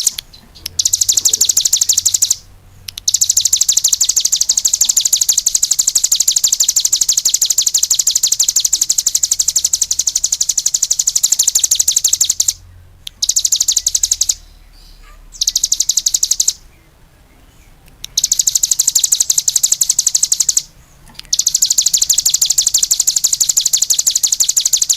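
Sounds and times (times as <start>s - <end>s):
songbird chattering trill: 0.0s - 24.9s.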